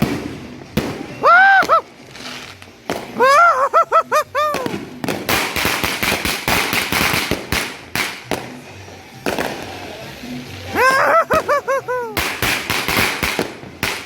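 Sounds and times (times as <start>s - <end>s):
fireworks crackling and popping: 0.0s - 14.0s
high-pitched voice crying out: 1.2s - 1.8s, 10.8s - 12.2s.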